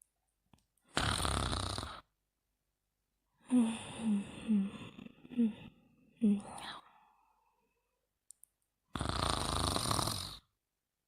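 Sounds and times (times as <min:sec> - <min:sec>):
loud rough snore: 0:00.9 - 0:02.1, 0:08.9 - 0:10.5.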